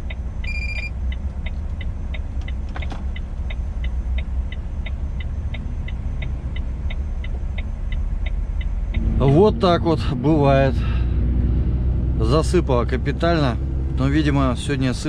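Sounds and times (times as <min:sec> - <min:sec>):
turn signal ticking: 0:00.0 - 0:10.5
truck engine and road rumble: 0:00.0 - 0:15.0
short electronic beep: 0:00.4 - 0:01.0.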